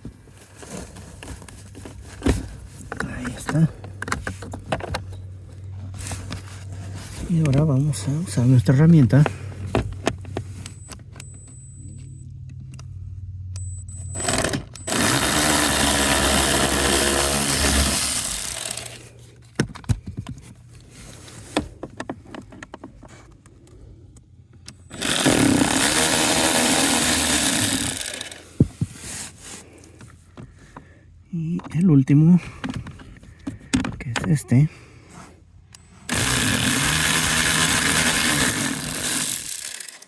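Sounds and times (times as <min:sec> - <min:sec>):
handling clicks and knocks: 0:00.0 - 0:12.7, 0:17.5 - 0:25.9, 0:31.5 - 0:34.4
cordless power tool running: 0:14.2 - 0:19.1, 0:24.9 - 0:28.5, 0:35.8 - 0:40.0.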